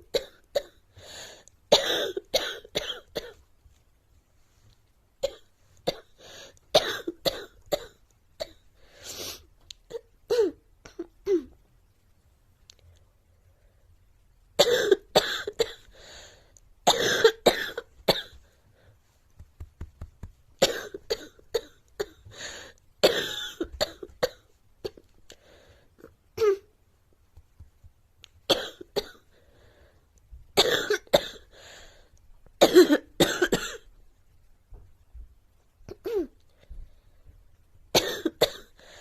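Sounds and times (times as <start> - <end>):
girl coughing: 1.7 - 3.4, 6.8 - 8.6, 9.9 - 11.5, 14.6 - 15.8, 16.9 - 18.4, 20.6 - 22.2, 23.0 - 25.0, 28.5 - 29.2, 30.6 - 31.5, 32.6 - 33.8, 35.9 - 36.4, 38.0 - 38.8.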